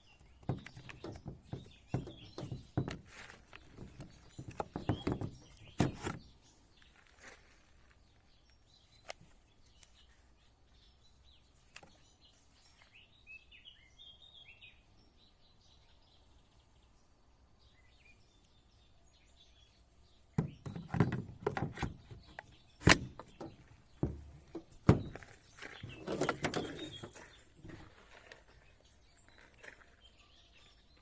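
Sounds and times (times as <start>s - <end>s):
handling knocks and clicks: 0.1s - 6.3s, 20.4s - 28.6s.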